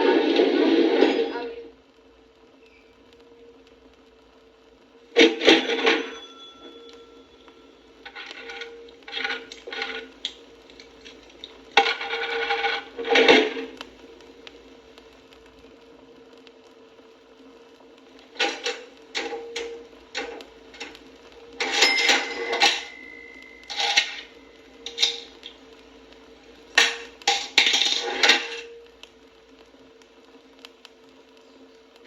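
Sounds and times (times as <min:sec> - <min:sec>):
cash register keys and drawer: 0:05.2 - 0:07.0, 0:08.0 - 0:10.1, 0:11.8 - 0:13.7, 0:18.4 - 0:21.0, 0:21.6 - 0:25.4, 0:26.7 - 0:28.7
cash register bell ringing: 0:05.2 - 0:10.1, 0:11.8 - 0:13.6, 0:18.4 - 0:25.5, 0:26.8 - 0:28.8.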